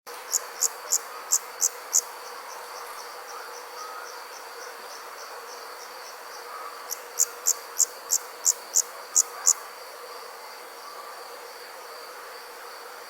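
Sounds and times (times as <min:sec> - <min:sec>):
high-pitched insect buzz: 0:00.1 - 0:10.9
insects chirping: 0:00.1 - 0:13.0.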